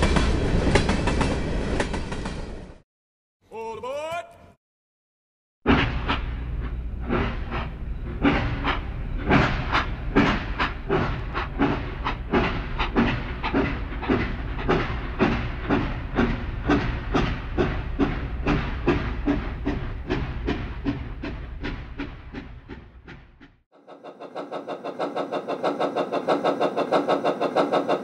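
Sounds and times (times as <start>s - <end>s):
steam locomotive chuffing: 5.7s - 28.0s.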